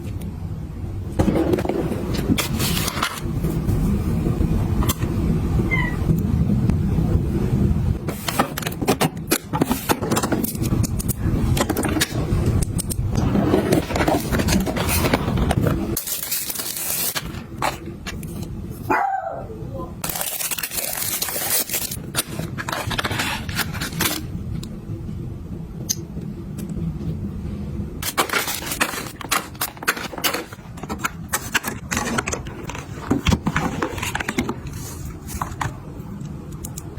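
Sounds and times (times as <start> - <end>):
low steady hum: 0.0 - 36.9
small items clicking and scraping: 20.0 - 24.3, 28.0 - 35.7.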